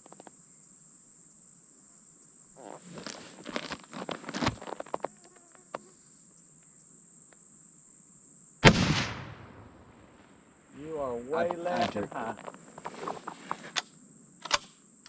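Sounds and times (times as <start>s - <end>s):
high insect drone: 0.0s - 15.0s
rifle shot: 8.6s - 10.2s
clicks and rustles: 11.4s - 14.7s.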